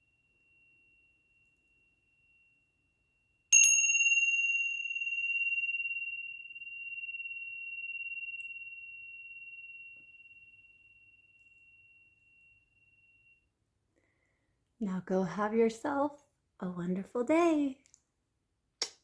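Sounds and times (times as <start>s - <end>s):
high-pitched bell ringing: 0.0s - 13.4s.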